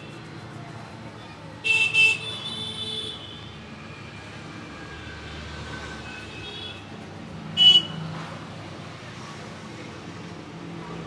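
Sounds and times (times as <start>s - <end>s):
passing traffic hum: 3.5s - 11.0s.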